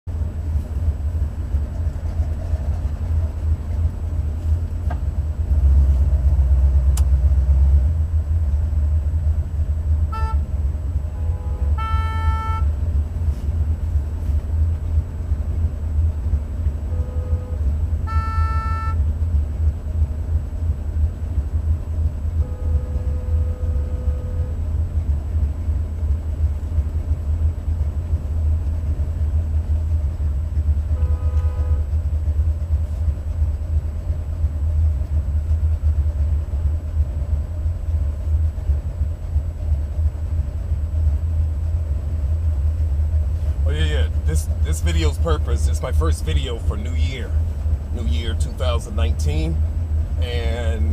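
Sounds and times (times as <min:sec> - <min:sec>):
engine idling with low rumble: 0:00.1 - 0:50.9
short high-pitched toots: 0:10.1 - 0:10.5, 0:11.1 - 0:12.8, 0:22.4 - 0:24.6.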